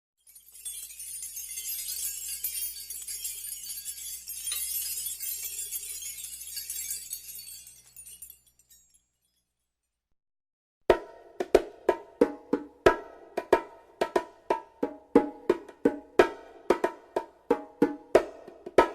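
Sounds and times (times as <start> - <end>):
glassy clinking and jingling: 0.2 - 9.9.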